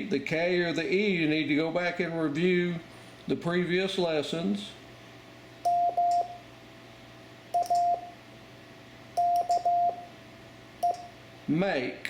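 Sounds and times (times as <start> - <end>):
morse code beep tone: 5.7 - 6.4, 7.6 - 8.2, 9.2 - 10.1, 10.8 - 11.1.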